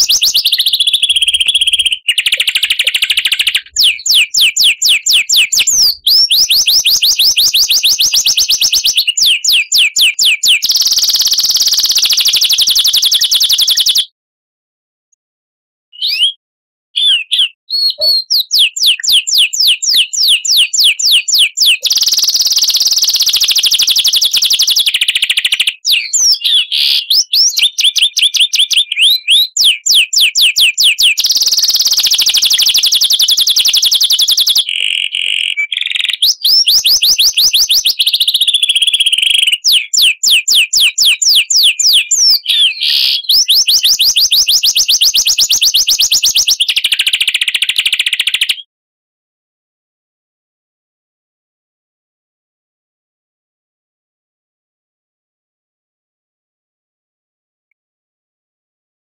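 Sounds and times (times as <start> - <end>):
songbird whistles and trills: 0.0 - 14.1, 16.0 - 16.4, 17.0 - 48.7.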